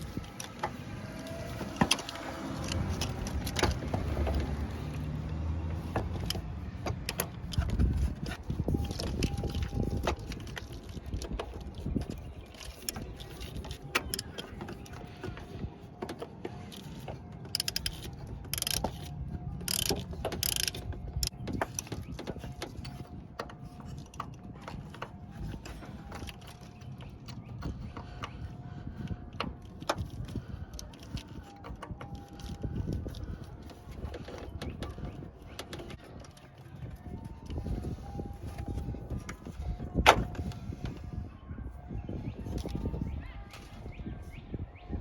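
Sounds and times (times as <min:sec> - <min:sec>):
ratchet wrench clicking: 0:17.5 - 0:21.9.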